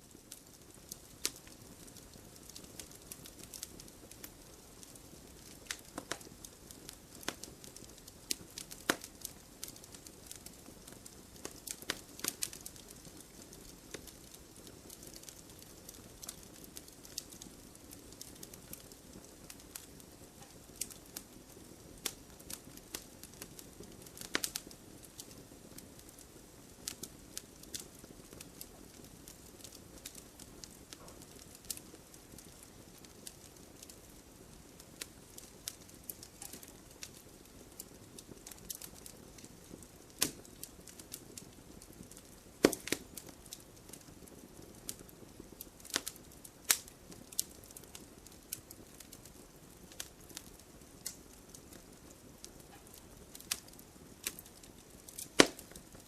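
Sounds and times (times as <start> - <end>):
logs crackling and popping: 0.0 - 56.0
soft steady hiss: 0.0 - 56.0.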